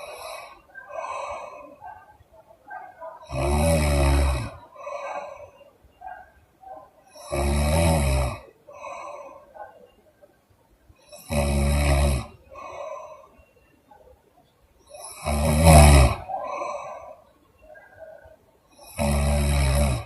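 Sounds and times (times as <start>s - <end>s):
woman snoring: 0.0s - 1.8s, 3.3s - 5.5s, 7.1s - 9.5s, 11.0s - 13.3s, 14.9s - 17.1s, 18.8s - 20.0s
soft breath: 0.0s - 3.3s, 4.5s - 7.3s, 8.6s - 10.4s, 12.4s - 15.1s, 16.3s - 18.9s.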